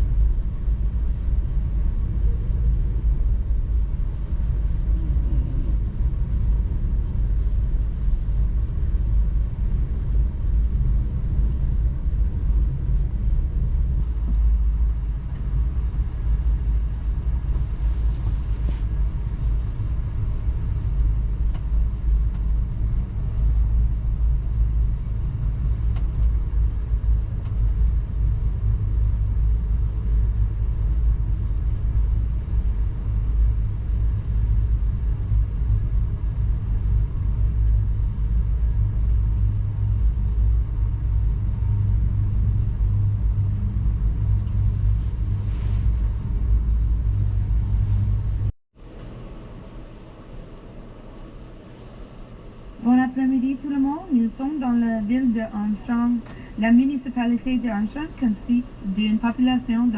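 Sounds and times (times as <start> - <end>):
passenger train rumbling on track: 0.0 - 50.2.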